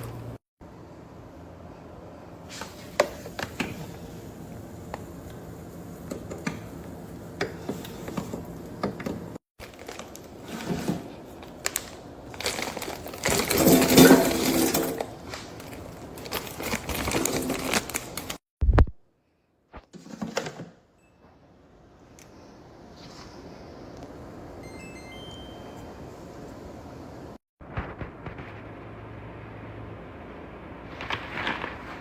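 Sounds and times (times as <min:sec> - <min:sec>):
rustling and crumpling: 0:09.6 - 0:18.4.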